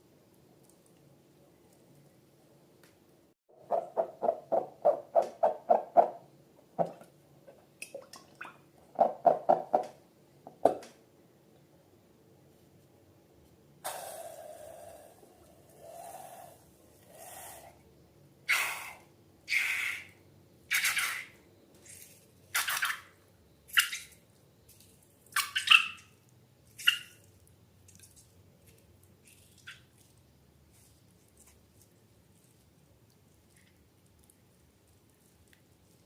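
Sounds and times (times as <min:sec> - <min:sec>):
slime squelching: 0:26.6 - 0:36.0.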